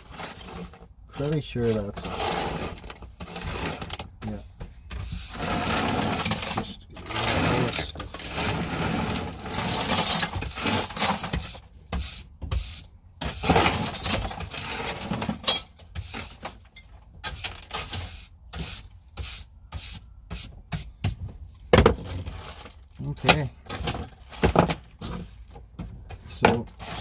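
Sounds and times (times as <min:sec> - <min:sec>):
scraping and rubbing: 0:00.0 - 0:16.6, 0:26.6 - 0:27.0.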